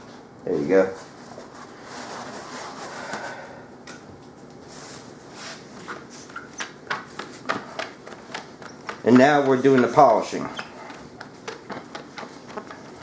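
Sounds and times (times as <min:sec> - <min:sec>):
cloth rubbing on a screen: 0:00.8 - 0:03.1, 0:04.7 - 0:06.6.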